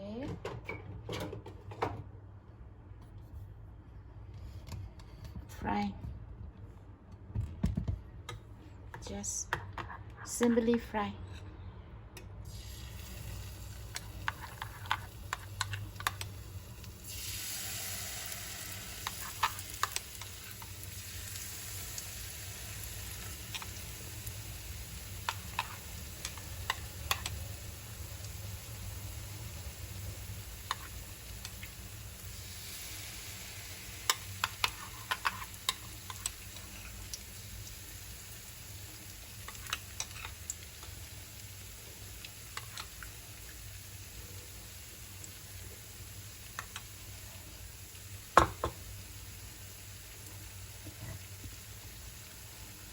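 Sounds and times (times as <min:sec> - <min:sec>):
batter sizzling in oil: 0:12.5 - 0:52.9
stirring clicks in pan: 0:14.0 - 0:16.3, 0:19.0 - 0:20.7, 0:25.2 - 0:27.4, 0:46.5 - 0:46.9.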